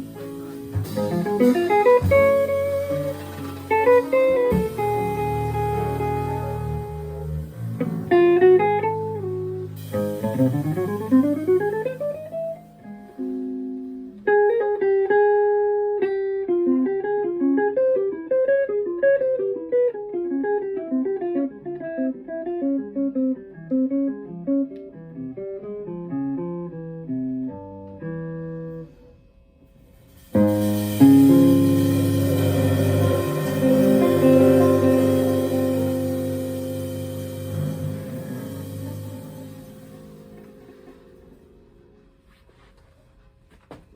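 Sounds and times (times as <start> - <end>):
jazz band with drums: 0.0 - 15.0, 29.9 - 43.0
jazz guitar playing: 0.0 - 29.0, 30.3 - 42.2.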